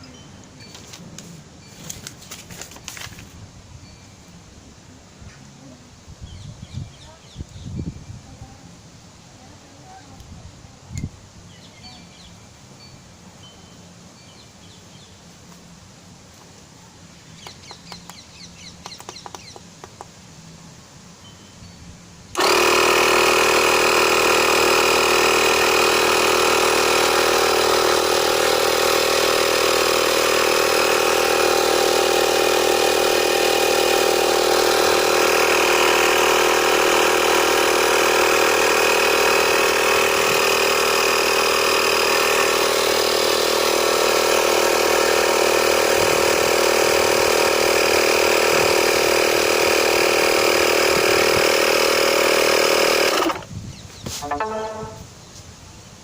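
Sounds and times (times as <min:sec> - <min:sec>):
faint clicks and chirps: 0:17.4 - 0:20.1
electric tire inflator running: 0:22.3 - 0:53.5, 0:54.2 - 0:55.0.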